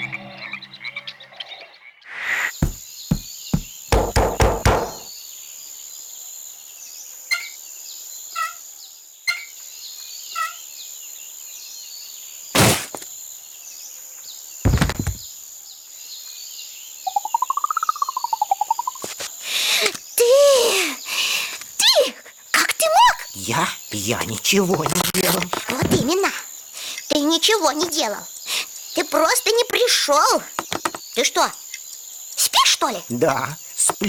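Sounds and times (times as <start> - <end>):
birds chirping: 0.0 - 5.4, 16.0 - 34.0
cartoon knocks: 2.6 - 5.1, 14.7 - 15.2
heavy thuds: 2.6 - 5.1.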